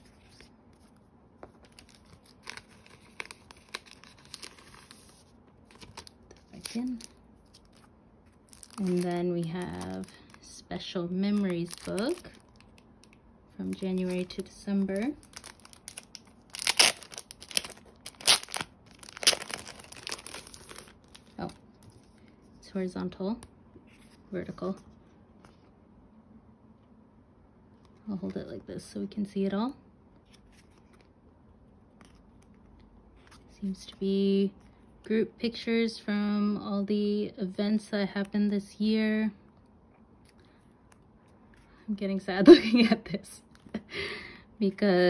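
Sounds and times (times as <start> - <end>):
paper and packaging rustling: 0.0 - 22.5.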